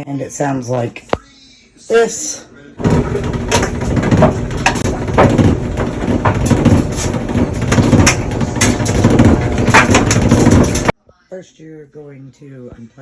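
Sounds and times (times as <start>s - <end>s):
clothes dryer rumbling: 2.8s - 11.0s
knocks and clatter inside dryer: 2.8s - 11.0s.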